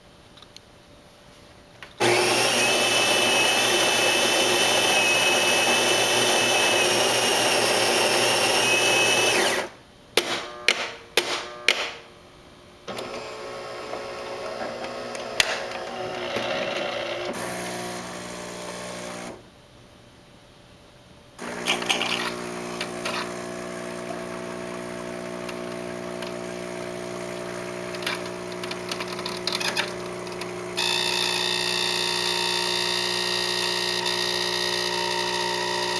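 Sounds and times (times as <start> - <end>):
espresso machine running with screech: 2.0 - 9.6, 15.8 - 19.4, 21.4 - 35.9.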